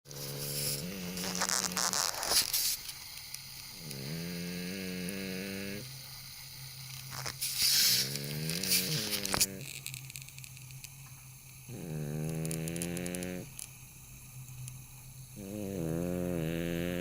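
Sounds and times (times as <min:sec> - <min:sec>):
cat snoring: 0:00.1 - 0:02.5, 0:03.7 - 0:05.9, 0:07.8 - 0:09.7, 0:11.7 - 0:13.5, 0:15.4 - 0:17.0.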